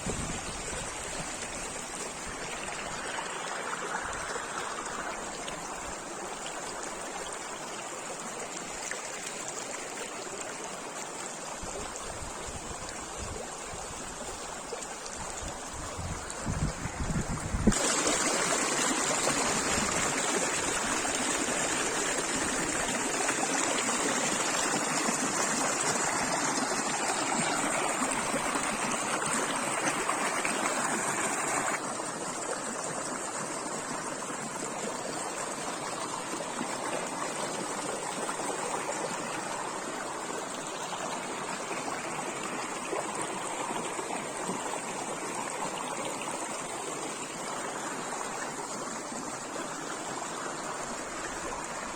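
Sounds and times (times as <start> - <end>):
stream water flowing: 0.0 - 51.9.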